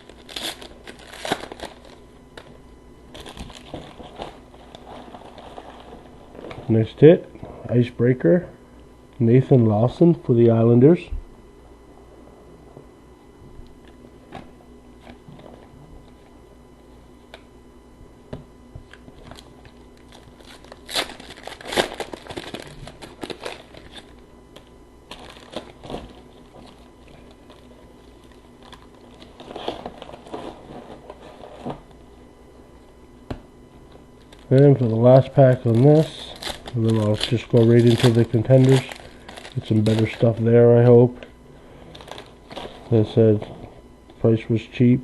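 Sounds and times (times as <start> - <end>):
plastic wrappers tearing and crinkling: 0.0 - 6.8, 19.2 - 32.0, 34.2 - 41.2, 41.9 - 43.2.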